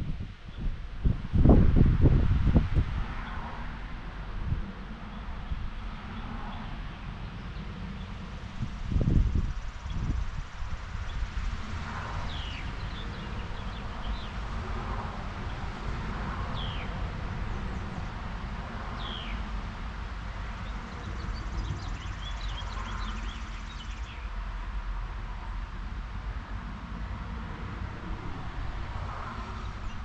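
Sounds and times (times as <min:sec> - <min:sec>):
birds chirping: 0:19.0 - 0:19.4, 0:20.6 - 0:24.3.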